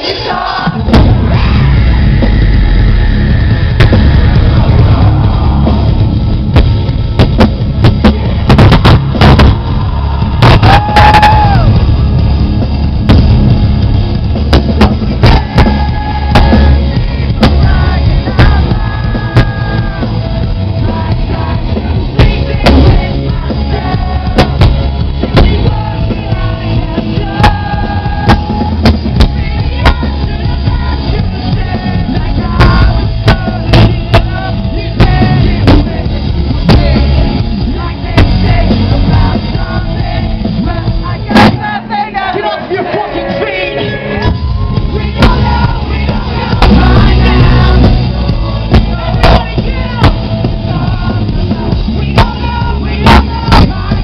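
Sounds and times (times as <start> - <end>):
pounding drums: 0.0 - 43.4, 44.2 - 54.0
live rock band playing: 0.0 - 54.0
person singing: 15.1 - 54.0.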